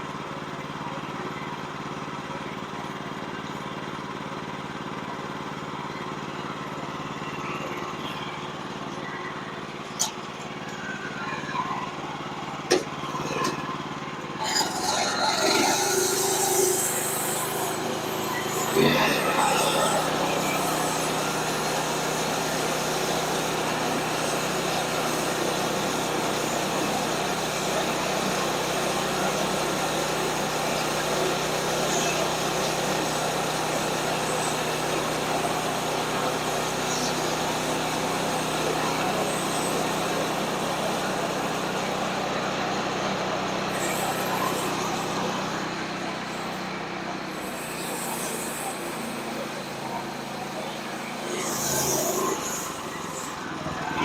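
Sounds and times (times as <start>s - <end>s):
band sawmill cutting log: 12.7s - 54.0s.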